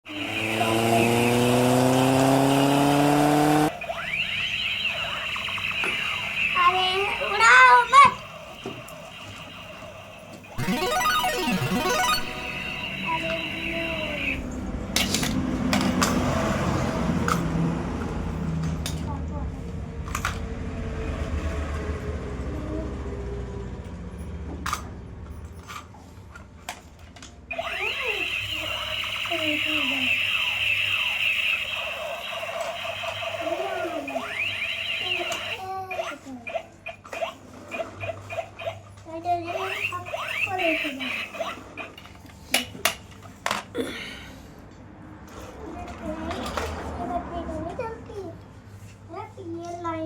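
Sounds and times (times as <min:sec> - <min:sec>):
toy motor humming: 0:00.1 - 0:02.4, 0:27.5 - 0:30.2, 0:39.4 - 0:42.0
vehicle engine revving: 0:00.1 - 0:03.7.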